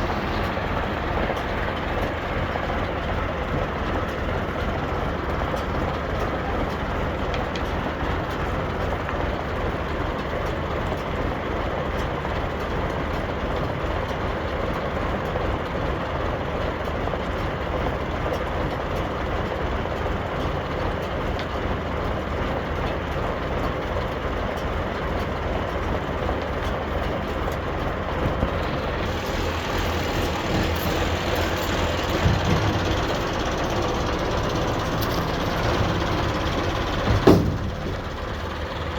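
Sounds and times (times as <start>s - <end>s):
baler and tractor engine running: 0.0s - 38.9s
short mechanical knocks: 28.2s - 38.3s.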